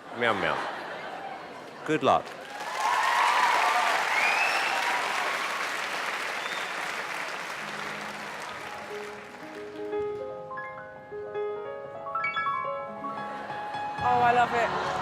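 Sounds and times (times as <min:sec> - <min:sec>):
audience applauding: 0:01.2 - 0:10.3
audience cheering and whooping: 0:02.4 - 0:08.9.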